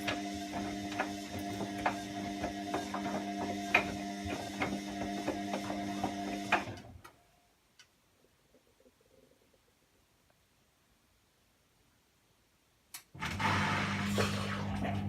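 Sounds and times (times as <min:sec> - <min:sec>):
washing machine motor hum: 0:00.0 - 0:06.9, 0:13.2 - 0:15.0.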